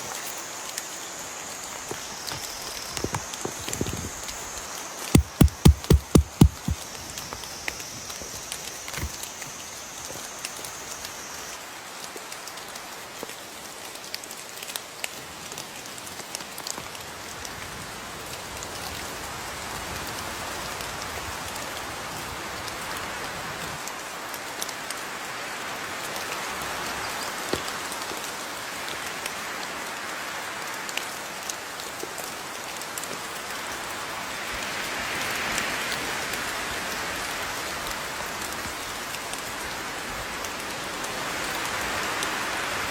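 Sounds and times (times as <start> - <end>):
steady rain falling: 11.1 - 42.9.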